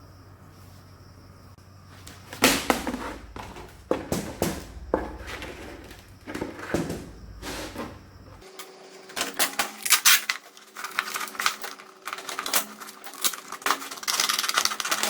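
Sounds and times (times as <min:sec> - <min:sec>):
sharp knocks and clattering: 0:02.0 - 0:08.4.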